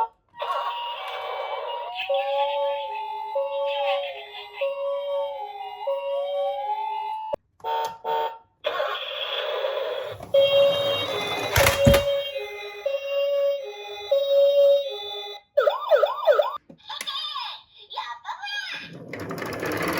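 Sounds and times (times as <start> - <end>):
toy two-tone siren: 0.4 - 16.6.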